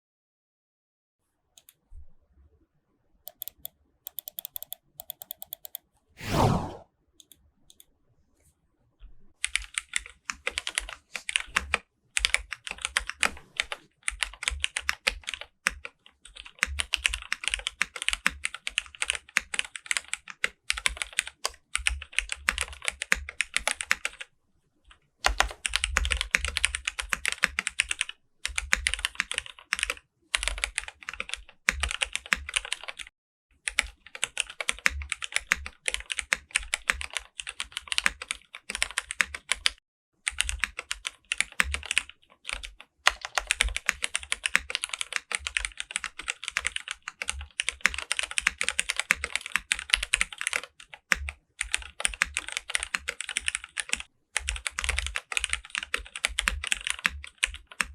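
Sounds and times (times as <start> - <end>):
mechanical keyboard typing: 3.3 - 5.8, 9.4 - 24.3, 25.3 - 57.9.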